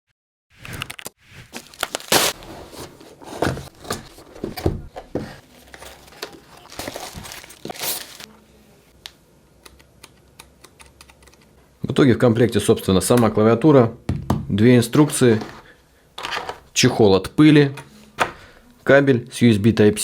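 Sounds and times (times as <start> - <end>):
packaging rustling: 0.9 - 8.3.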